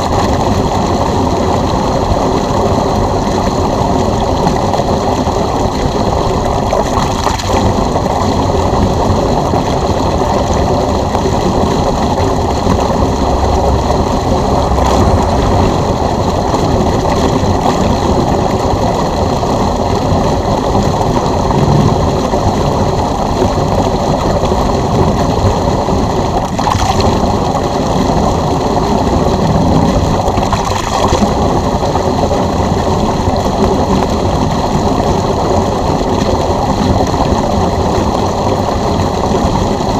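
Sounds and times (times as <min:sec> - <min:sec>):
water rushing through hose: 0:00.0 - 0:39.9.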